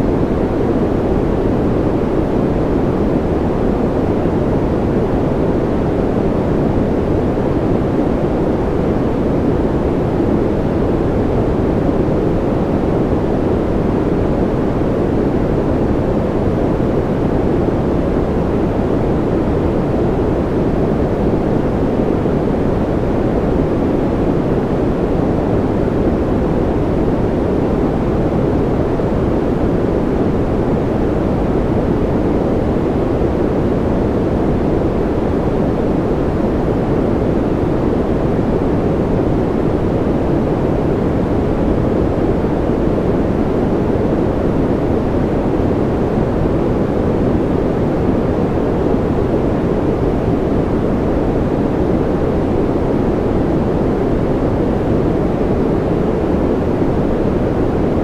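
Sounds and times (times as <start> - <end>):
white noise hiss: 0.0 - 58.0.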